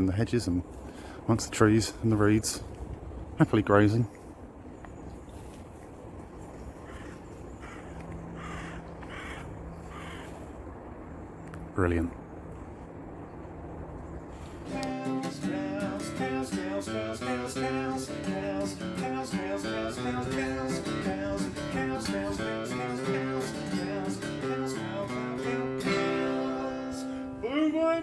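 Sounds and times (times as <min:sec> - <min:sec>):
acoustic guitar tune: 0:14.6 - 0:28.0.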